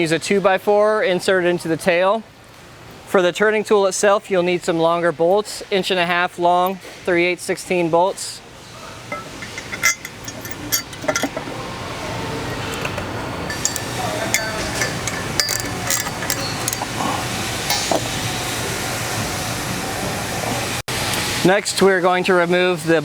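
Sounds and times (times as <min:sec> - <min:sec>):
metal tools clinking: 0:09.1 - 0:11.6, 0:12.6 - 0:18.3.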